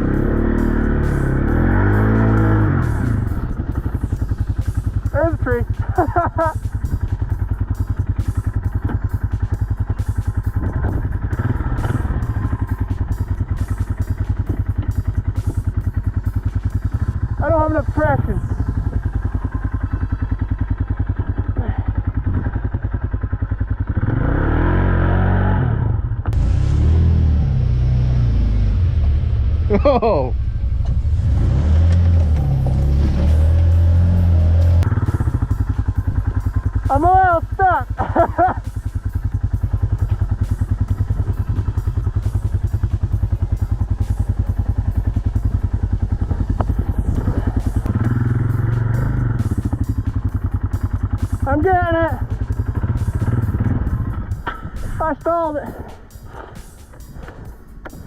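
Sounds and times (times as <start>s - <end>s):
dirt bike engine revving: 0.0s - 58.0s.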